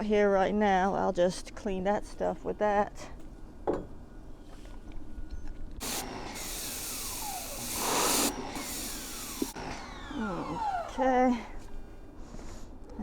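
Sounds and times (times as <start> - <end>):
pressure washer hissing: 5.8 - 12.0.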